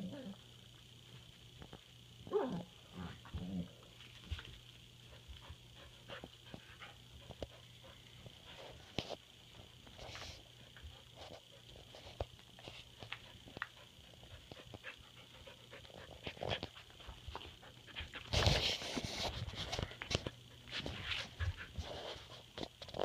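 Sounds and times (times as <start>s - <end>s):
puppies panting: 13.1s - 19.0s, 20.5s - 22.2s.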